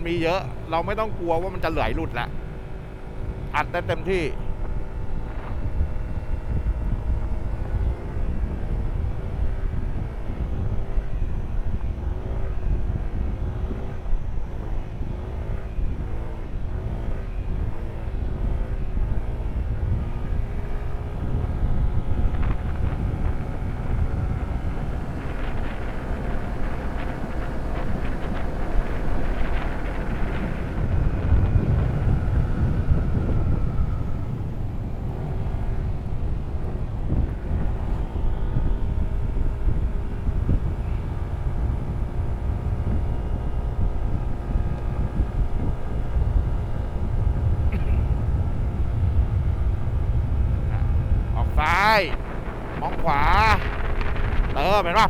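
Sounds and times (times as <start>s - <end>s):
motorcycle engine running: 0.0s - 55.0s
wind buffeting microphone: 0.0s - 55.0s.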